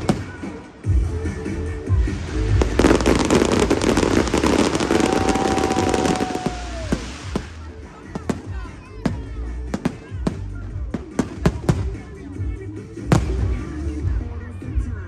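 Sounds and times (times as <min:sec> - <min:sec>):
crackling fireworks shells: 0:00.0 - 0:00.9, 0:02.0 - 0:12.1
fireworks bangs: 0:00.0 - 0:01.1, 0:02.0 - 0:12.3, 0:13.1 - 0:14.1.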